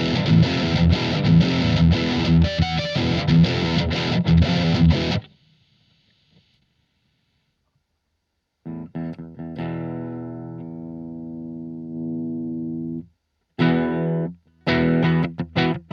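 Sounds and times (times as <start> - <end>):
picked guitar notes and chord: 0.0 - 5.2, 8.7 - 15.9
distorted electric guitar: 0.0 - 6.5, 8.7 - 15.9.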